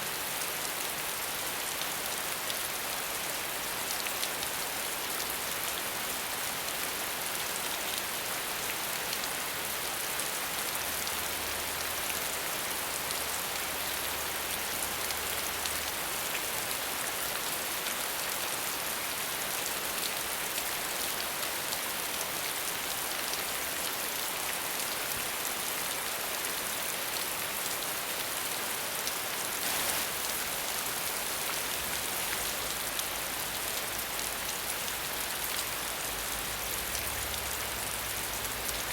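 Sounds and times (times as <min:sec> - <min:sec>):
heavy rain pattering: 0:20.0 - 0:38.9.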